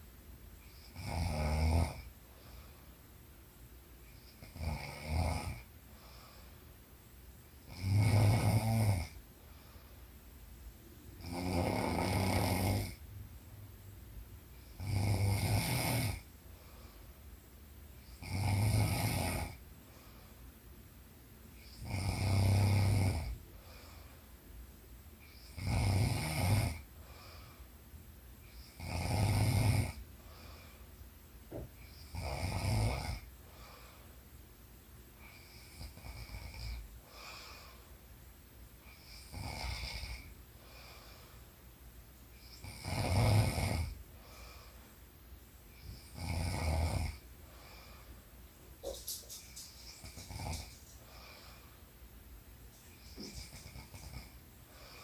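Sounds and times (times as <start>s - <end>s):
woman snoring: 0.7s - 2.1s, 4.4s - 5.7s, 7.7s - 9.2s, 11.2s - 13.0s, 14.7s - 16.2s, 18.1s - 19.6s, 21.6s - 23.4s, 25.3s - 26.8s, 28.5s - 30.0s, 31.9s - 33.3s, 38.9s - 40.3s, 42.4s - 44.0s, 45.8s - 47.8s.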